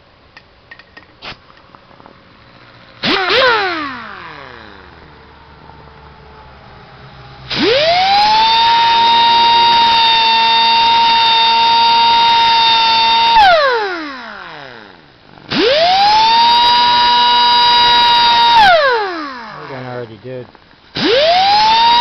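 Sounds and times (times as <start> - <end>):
electric grinder whining: 2.5 - 6.2, 7.3 - 19.8, 21.0 - 22.0.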